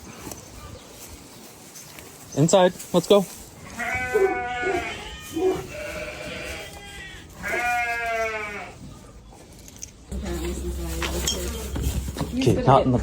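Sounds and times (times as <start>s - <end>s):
sheep bleating: 3.7s - 8.8s.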